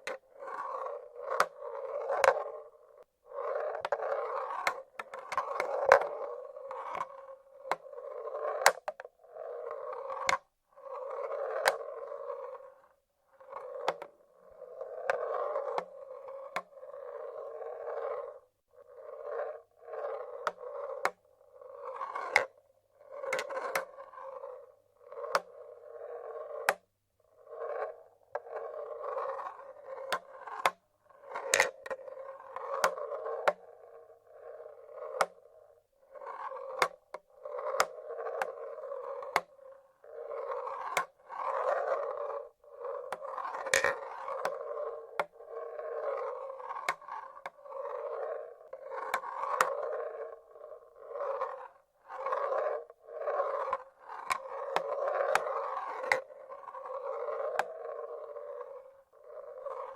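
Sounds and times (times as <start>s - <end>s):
marbles rolling on wooden tracks: 0.0s - 26.8s, 27.4s - 59.9s.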